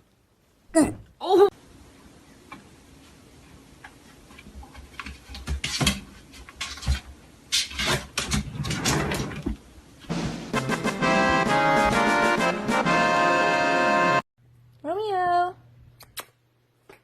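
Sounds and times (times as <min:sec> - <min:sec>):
music: 0:10.1 - 0:14.2.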